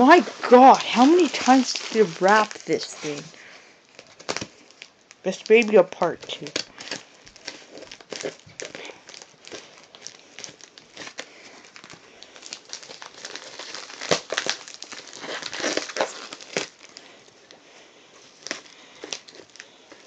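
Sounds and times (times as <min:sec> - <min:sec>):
wrapping crinkling and tearing: 0:00.0 - 0:20.0.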